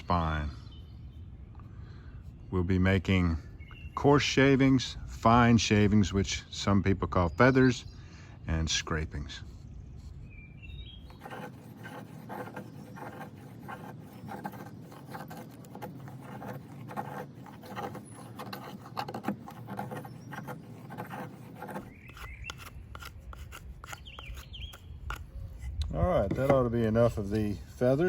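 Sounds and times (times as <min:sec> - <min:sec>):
knife scraping wood shavings: 0:11.1 - 0:25.3.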